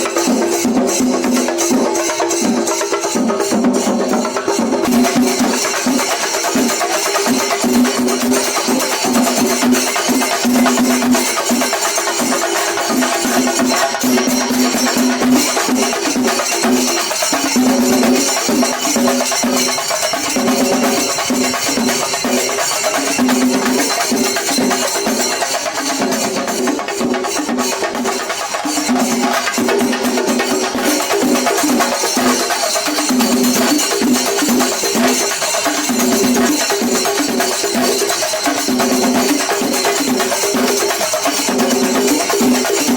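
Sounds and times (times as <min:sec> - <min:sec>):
drums played fast: 0:00.0 - 0:42.9
hand cymbals: 0:00.0 - 0:42.9.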